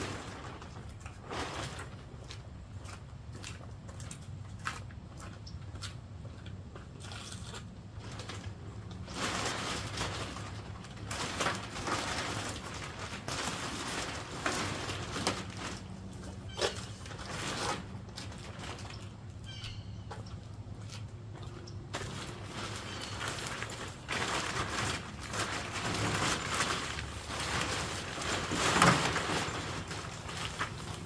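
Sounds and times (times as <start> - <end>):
tent fabric rustling: 0.0 - 2.2, 8.0 - 18.9, 21.9 - 31.0.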